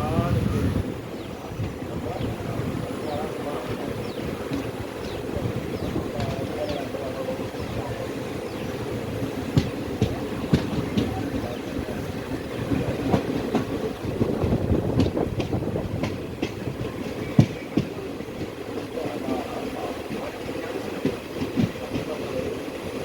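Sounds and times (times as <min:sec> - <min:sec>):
train rumbling on track: 0:00.0 - 0:23.0
train wheels clattering: 0:03.0 - 0:23.0.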